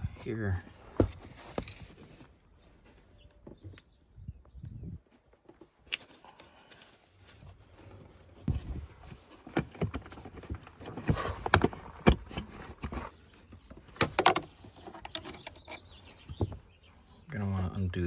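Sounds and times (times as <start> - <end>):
plastic trim clicking and rattling: 13.9 - 15.8.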